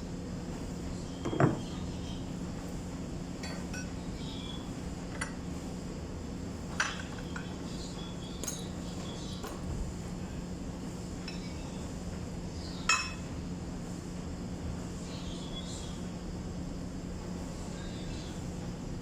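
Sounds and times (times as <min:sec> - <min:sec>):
steady low hum: 0:00.0 - 0:19.0
tools clinking on metal: 0:08.4 - 0:09.7.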